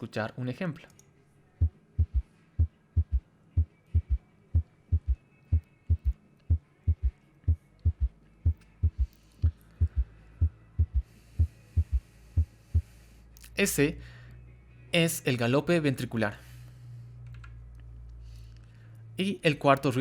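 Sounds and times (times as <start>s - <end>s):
galloping heartbeat thumps: 1.6s - 12.9s.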